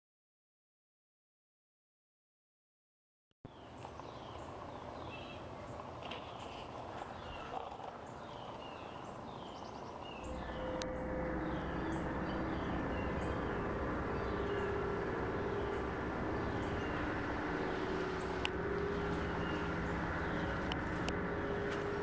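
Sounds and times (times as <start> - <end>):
small birds chirping: 3.5 - 22.0
low droning rumble with hum: 10.2 - 22.0.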